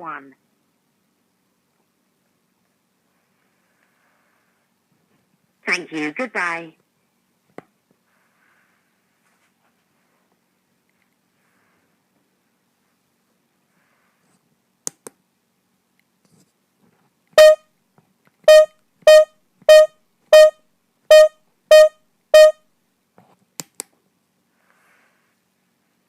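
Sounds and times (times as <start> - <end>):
short electronic beeps: 17.4 - 17.6, 18.5 - 22.6.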